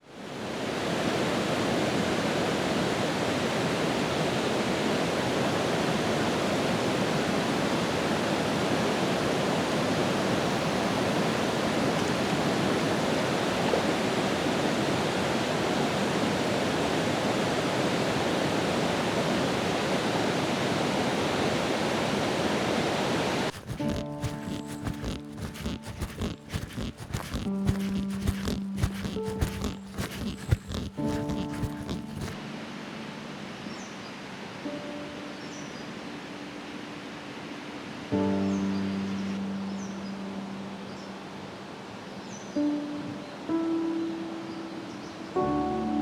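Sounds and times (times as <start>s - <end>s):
mountain stream rushing: 0.2s - 33.6s.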